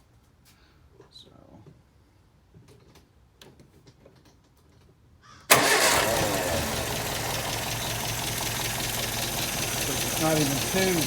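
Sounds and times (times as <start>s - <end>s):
car engine starting and running: 5.5s - 11.0s.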